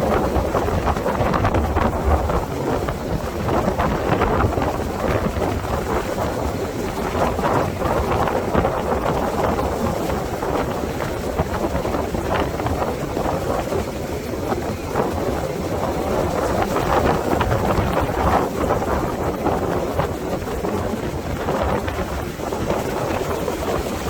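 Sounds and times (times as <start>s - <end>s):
ocean surf washing on beach: 0.0s - 24.0s
wind buffeting microphone: 0.0s - 24.0s.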